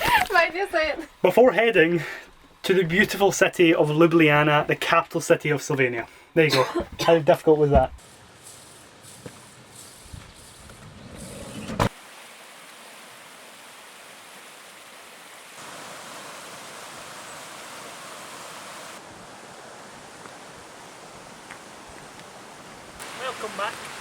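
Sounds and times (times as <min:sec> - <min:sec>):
rushing water: 0:11.9 - 0:24.0.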